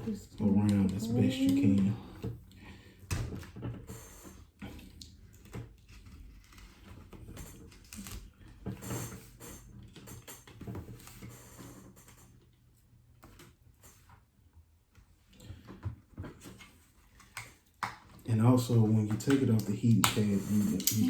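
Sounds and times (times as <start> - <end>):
plastic card scraping and clicking: 16.4 - 18.1.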